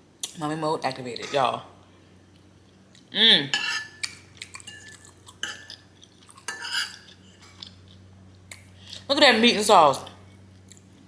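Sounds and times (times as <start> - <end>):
fork scraping on plate: 3.6 - 4.0, 4.6 - 7.8.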